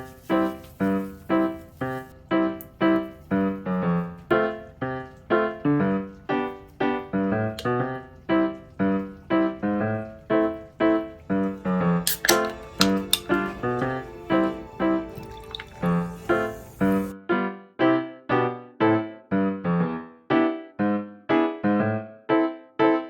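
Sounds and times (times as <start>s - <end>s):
light keyboard tune: 0.0s - 17.2s.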